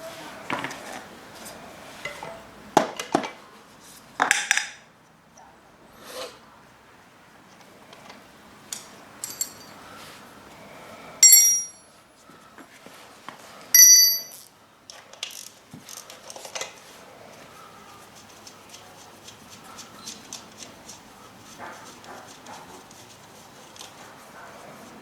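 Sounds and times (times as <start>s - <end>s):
metal tools clinking: 9.2s - 9.8s, 11.2s - 11.9s, 13.8s - 14.5s
sharp ringing clinks: 9.2s - 9.8s, 11.2s - 11.9s, 13.8s - 14.5s.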